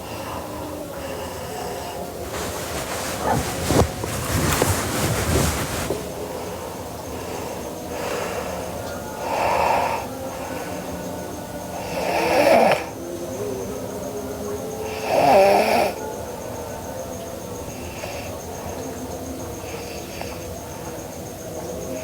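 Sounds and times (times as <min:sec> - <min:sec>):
girl snoring: 0:11.8 - 0:12.9, 0:15.0 - 0:16.0.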